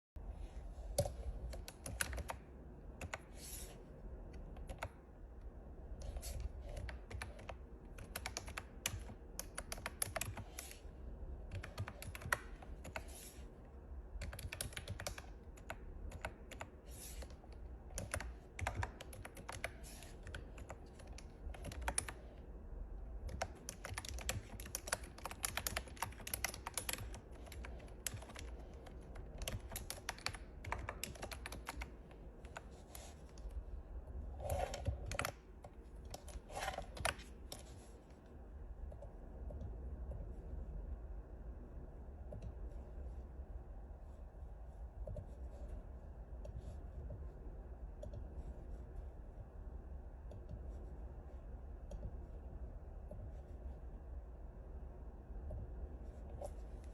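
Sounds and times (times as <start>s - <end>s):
keyboard key clicks: 34.5s - 35.4s.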